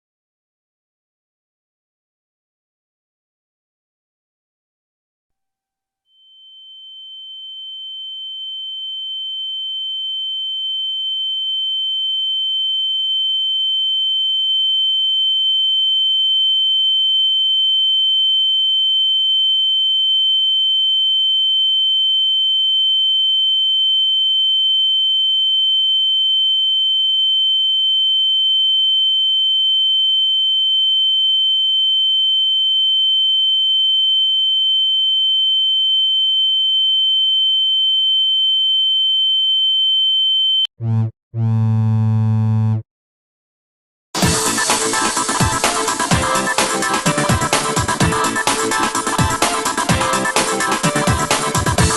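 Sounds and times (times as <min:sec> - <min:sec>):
high-pitched electronic tone: 0:40.8 - 0:42.8.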